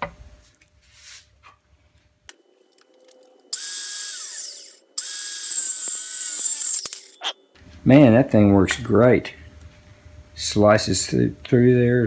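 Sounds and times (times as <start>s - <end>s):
circular saw running: 3.5s - 7.2s.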